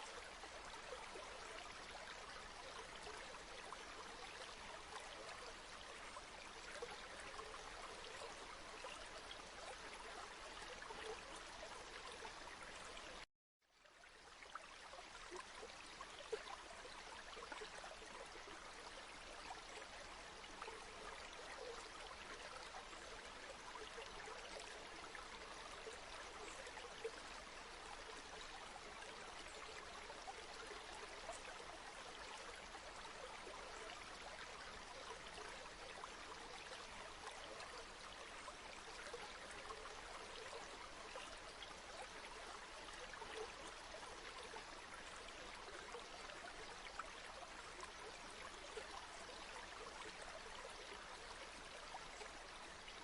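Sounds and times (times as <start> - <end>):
river flowing: 13.8 - 53.0.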